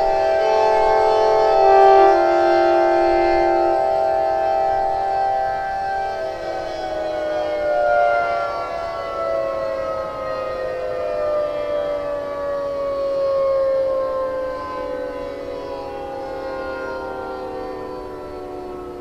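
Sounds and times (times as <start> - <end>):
siren chord sliding down: 0.0 - 19.0.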